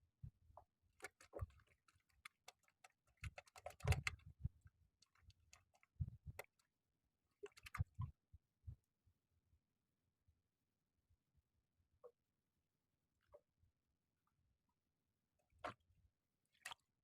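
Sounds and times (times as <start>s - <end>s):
faint irregular clicks and taps: 0.6s - 6.7s.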